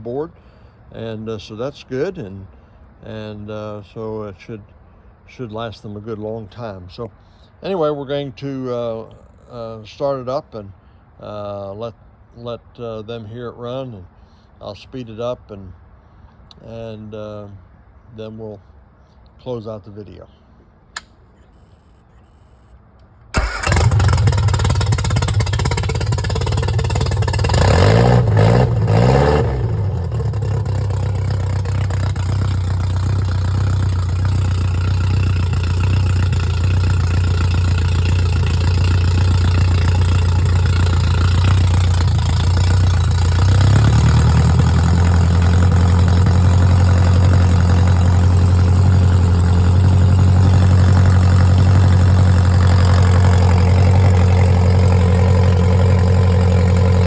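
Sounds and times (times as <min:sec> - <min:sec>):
car engine starting and revving: 0:23.4 - 0:57.0.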